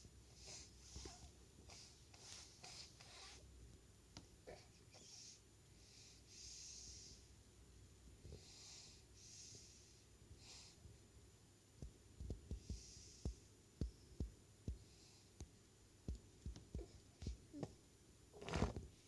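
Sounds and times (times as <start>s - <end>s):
baby breathy puffs: 0.3s - 3.4s, 4.5s - 7.3s, 8.3s - 10.8s, 12.6s - 13.5s
faint low thumps and taps: 11.8s - 17.8s.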